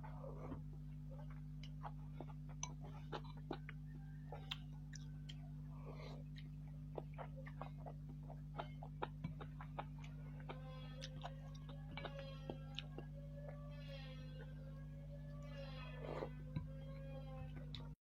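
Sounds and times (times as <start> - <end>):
wet chewing mouth sounds: 0.0 - 13.7
low electrical hum: 0.0 - 18.0.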